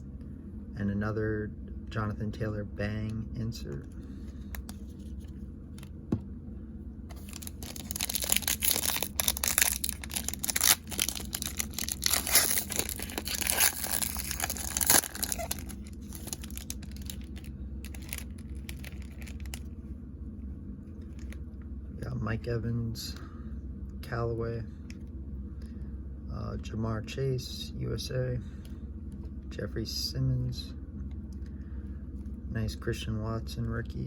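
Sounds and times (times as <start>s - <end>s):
handling of cards: 4.2s - 6.3s, 7.1s - 19.7s
wrapper tearing and crinkling: 7.1s - 19.6s.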